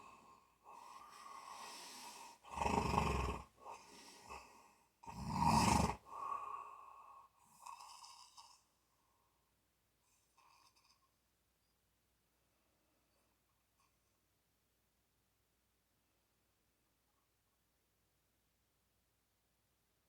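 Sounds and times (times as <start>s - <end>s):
quiet breathing: 0.0s - 11.7s
loud snores: 0.8s - 6.6s.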